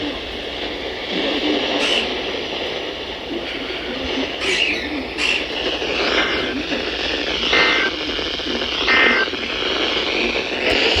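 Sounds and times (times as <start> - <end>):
radio static: 0.0 - 11.0
two-tone data bursts: 3.3 - 11.0.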